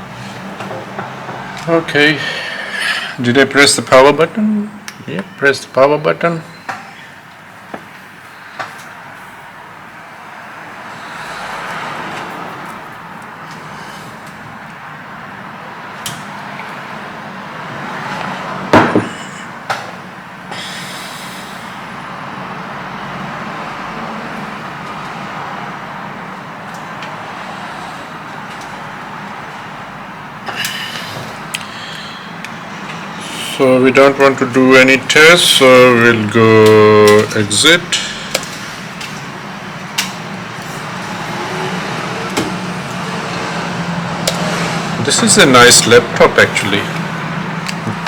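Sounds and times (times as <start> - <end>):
fan whirring: 0.0 - 48.0
sharp knocks: 18.7 - 19.9.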